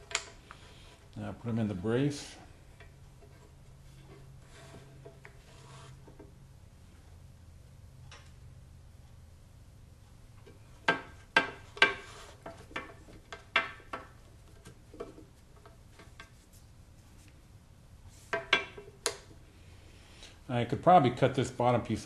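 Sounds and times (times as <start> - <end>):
wooden pieces clicking and knocking: 0.0 - 0.6.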